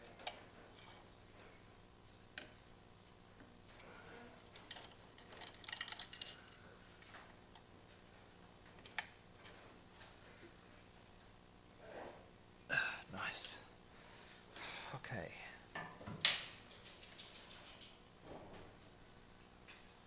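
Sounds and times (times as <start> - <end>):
metal parts clicking and knocking: 4.6 - 7.2, 16.2 - 17.9.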